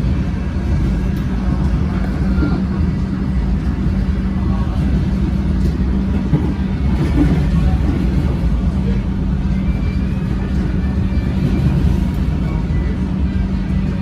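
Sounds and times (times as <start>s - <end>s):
constant hum: 0.0s - 14.0s
train wheels rumbling on track: 0.0s - 14.0s.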